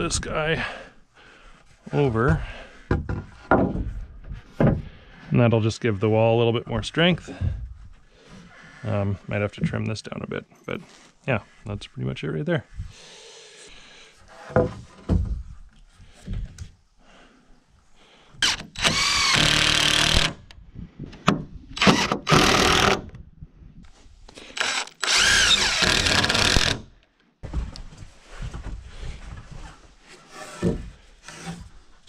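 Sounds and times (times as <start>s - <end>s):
knocks: 2.9s - 4.0s
power drill driving screws: 18.4s - 20.4s, 21.8s - 23.1s, 24.5s - 26.9s.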